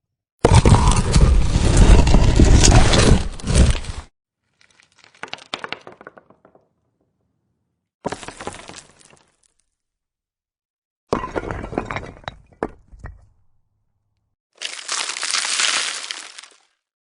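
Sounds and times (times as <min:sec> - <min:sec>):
stone crackling: 0:00.5 - 0:06.8, 0:14.6 - 0:16.8
rock crumbling and grinding: 0:00.5 - 0:06.9, 0:08.1 - 0:09.6, 0:11.1 - 0:13.6, 0:14.6 - 0:16.8.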